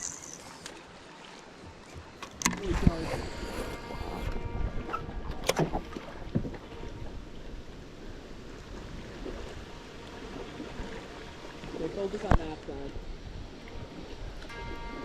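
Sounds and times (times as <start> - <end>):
wind on microphone: 2.4 - 11.1.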